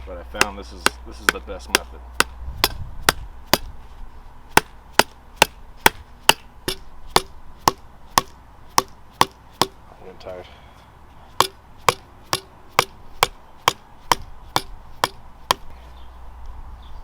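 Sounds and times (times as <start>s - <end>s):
hammer blows on metal: 0.3s - 3.8s, 4.5s - 9.8s, 11.3s - 15.7s.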